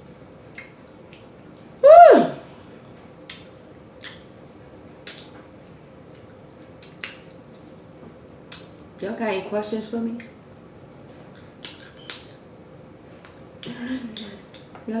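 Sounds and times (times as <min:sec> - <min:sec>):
wet mouth smacks: 0:00.5 - 0:01.6, 0:03.2 - 0:04.3, 0:05.0 - 0:05.4, 0:06.1 - 0:07.4, 0:08.5 - 0:08.9, 0:11.3 - 0:12.4
quiet chewing: 0:05.0 - 0:08.9.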